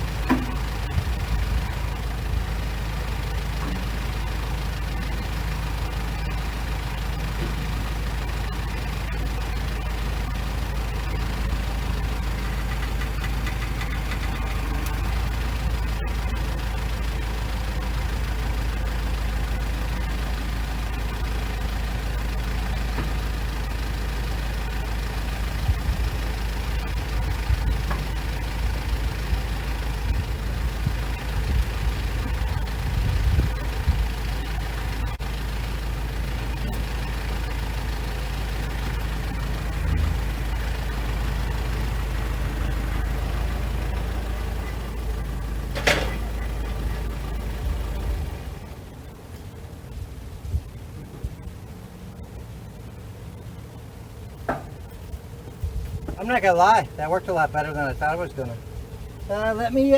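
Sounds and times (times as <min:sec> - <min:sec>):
sawmill engine running: 0:00.0 - 0:59.9.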